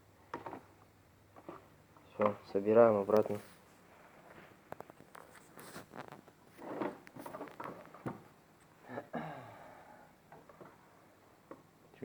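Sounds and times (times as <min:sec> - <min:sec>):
rustling scrapes: 0:02.5 - 0:08.0.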